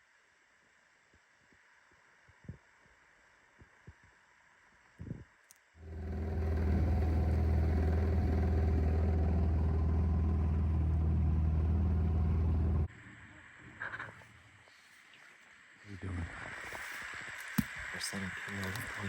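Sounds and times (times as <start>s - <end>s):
engine droning: 5.8s - 12.9s.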